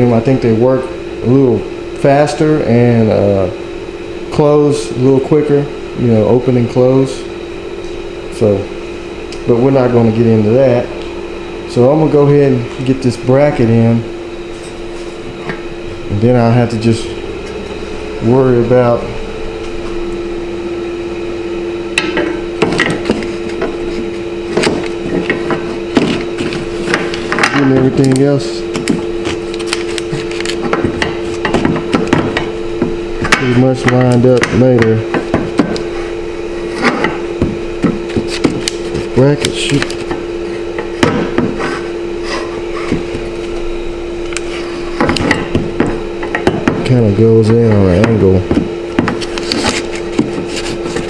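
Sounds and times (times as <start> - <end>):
steady machine hum: 0.0 - 51.0
knocks and rubbing of bracket: 40.0 - 43.5, 47.7 - 51.0.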